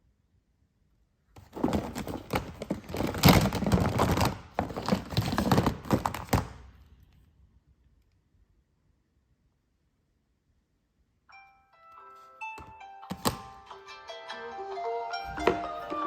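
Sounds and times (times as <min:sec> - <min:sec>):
hard objects clattering in a box: 0:01.4 - 0:06.6.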